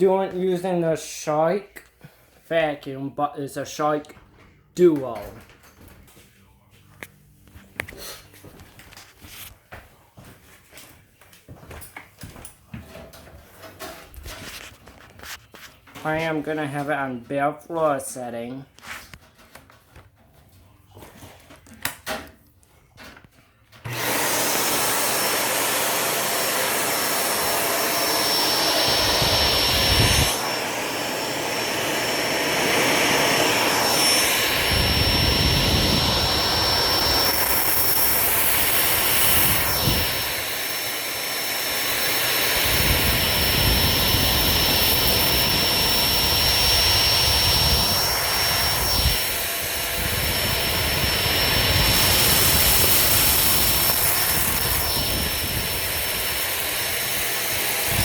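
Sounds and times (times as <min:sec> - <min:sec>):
vacuum cleaner whining: 0:23.7 - 0:58.0.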